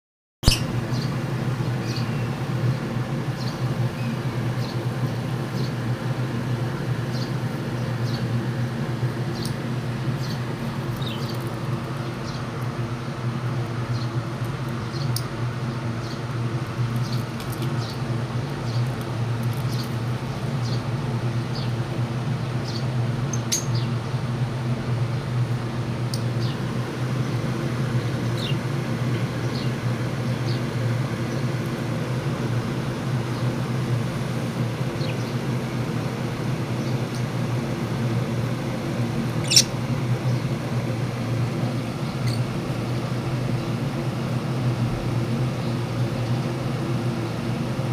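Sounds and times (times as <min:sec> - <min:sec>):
lovebirds chirping: 0:00.4 - 0:01.2, 0:39.4 - 0:40.4
steady low hum: 0:00.5 - 0:47.9.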